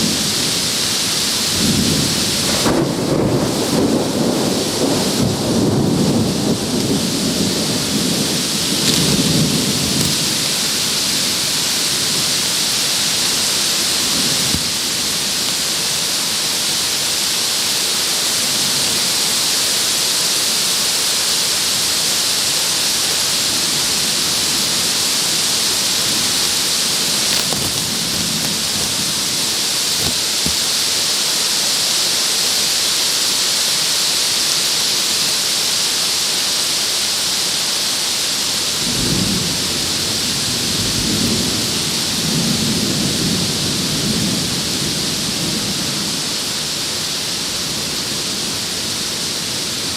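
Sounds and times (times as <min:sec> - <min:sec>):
torrential rain on plastic sheet: 0:00.0 - 0:25.1, 0:27.1 - 0:30.7, 0:31.6 - 0:49.9.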